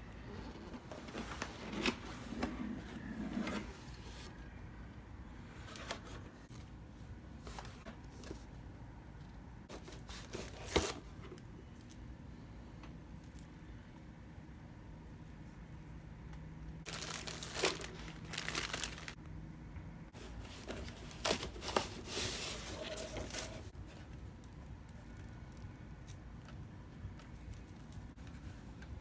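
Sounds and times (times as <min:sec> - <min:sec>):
plastic packaging crinkling: 0:16.9 - 0:19.2.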